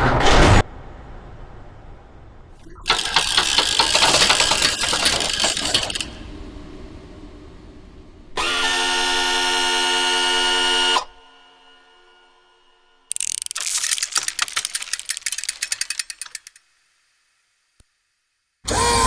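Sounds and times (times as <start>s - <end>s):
rapid mechanical clicking and clattering: 2.6s - 6.3s, 13.1s - 16.8s.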